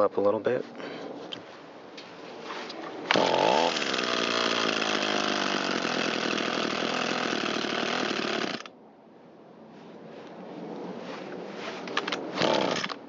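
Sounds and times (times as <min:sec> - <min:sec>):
string trimmer engine revving: 0:03.1 - 0:08.7, 0:12.4 - 0:12.9.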